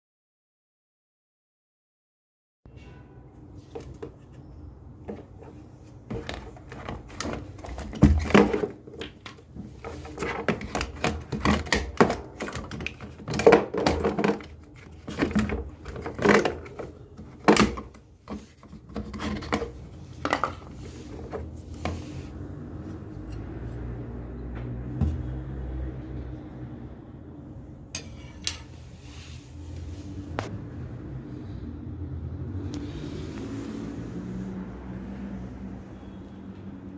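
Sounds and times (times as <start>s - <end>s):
hard objects clattering: 5.0s - 22.0s.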